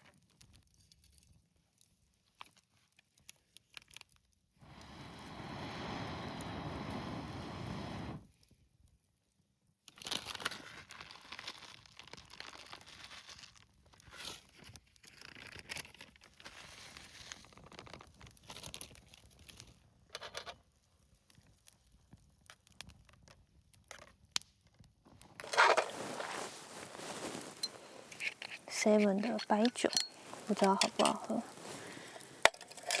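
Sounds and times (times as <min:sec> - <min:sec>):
food packaging rustling and crinkling: 0:09.9 - 0:20.6, 0:25.1 - 0:33.0.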